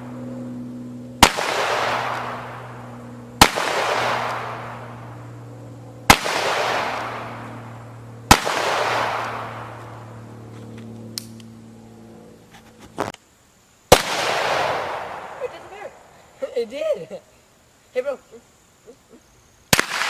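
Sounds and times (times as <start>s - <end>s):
gunshots with rushing echo: 1.2s - 5.2s, 6.0s - 10.1s, 13.9s - 15.5s, 19.7s - 20.0s.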